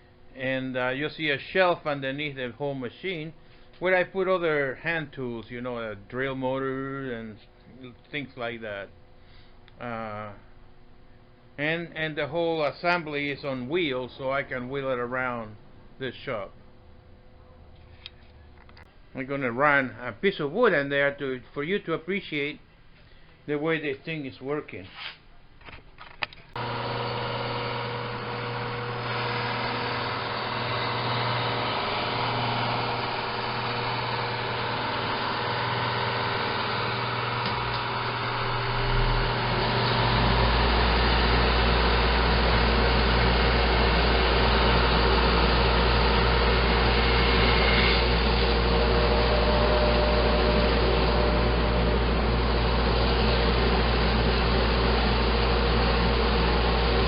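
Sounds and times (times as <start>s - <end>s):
deeper loud running sound: 26.6s - 57.0s
drum sander motor hum: 26.6s - 57.0s.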